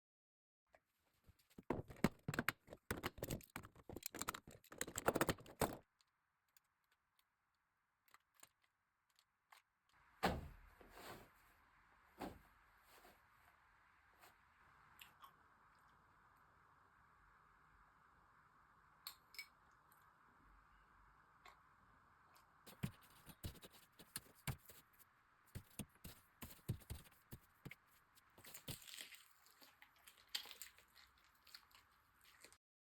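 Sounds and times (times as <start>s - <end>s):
dull thumps: 1.6s - 5.8s, 10.2s - 11.2s
small hard objects clattering: 1.6s - 5.8s.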